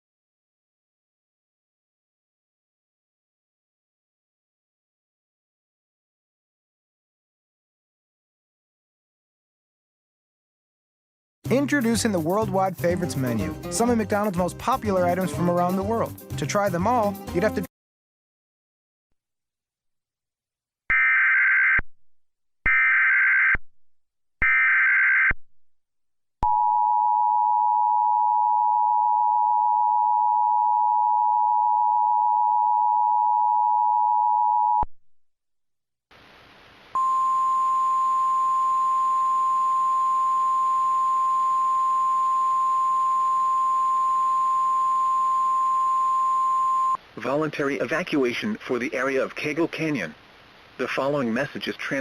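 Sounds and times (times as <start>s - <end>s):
two-tone attention signal: 37.0s - 47.0s.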